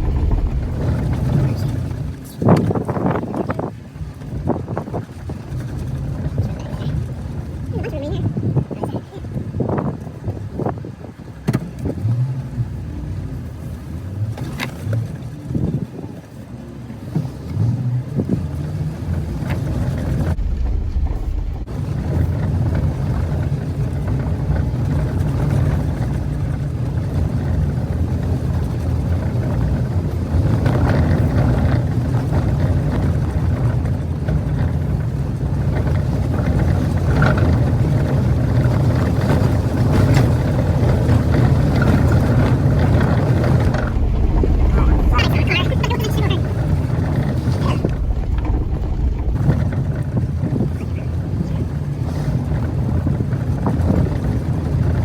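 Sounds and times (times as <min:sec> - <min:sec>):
car engine running: 0:00.0 - 0:08.1, 0:16.8 - 0:55.0
tyres on gravel: 0:40.0 - 0:51.2.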